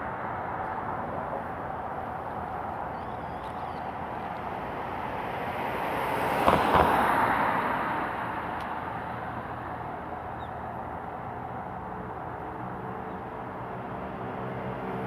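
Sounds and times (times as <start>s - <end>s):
street traffic noise: 0.0s - 15.0s
car passing close by: 4.8s - 9.6s.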